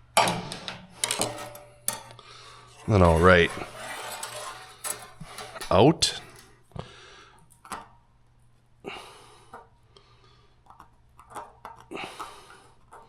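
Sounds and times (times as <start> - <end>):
metal parts clicking and clinking: 0.2 - 2.2, 2.8 - 6.5
metal scraping: 0.2 - 6.5.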